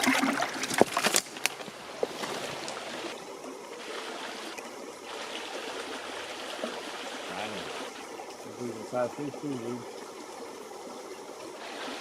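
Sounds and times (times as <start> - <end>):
creek water running: 0.0 - 12.0.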